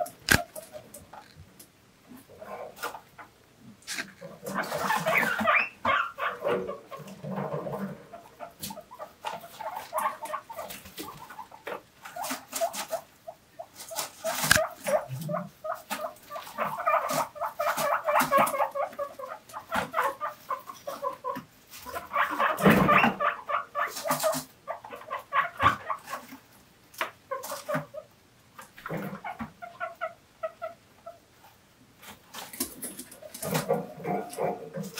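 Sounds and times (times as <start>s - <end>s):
guinea pigs wheeking: 0.0s - 1.4s, 2.1s - 34.9s.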